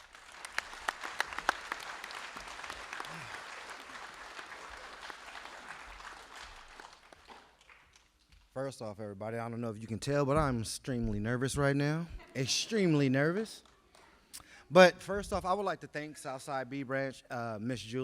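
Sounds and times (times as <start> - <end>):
audience applauding: 0.0 - 8.2.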